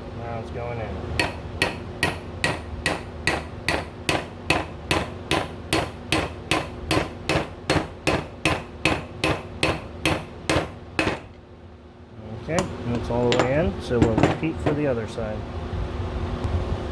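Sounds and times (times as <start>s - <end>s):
hammer striking metal with ring: 1.2s - 11.3s.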